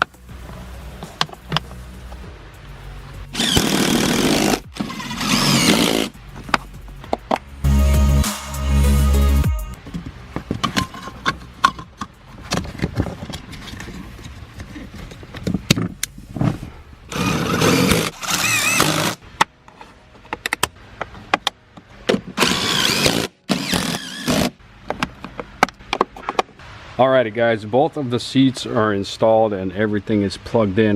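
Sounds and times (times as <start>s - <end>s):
small electric motor whining: 3.4s - 6.1s, 17.1s - 19.2s.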